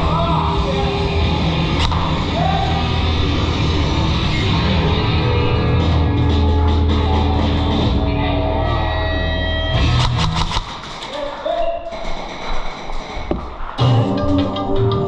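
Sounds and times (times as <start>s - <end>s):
loud rock music: 0.0s - 10.6s.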